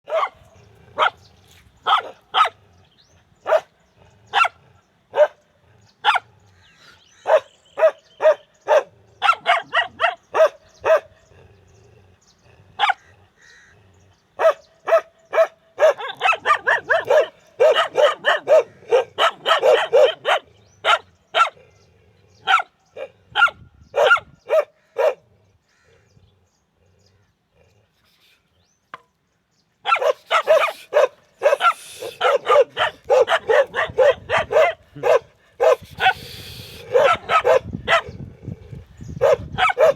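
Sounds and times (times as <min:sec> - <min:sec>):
dogs barking: 0:00.0 - 0:02.7, 0:03.4 - 0:06.5, 0:07.2 - 0:11.7, 0:12.6 - 0:13.2, 0:14.4 - 0:21.6, 0:22.4 - 0:25.3, 0:29.8 - 0:39.9.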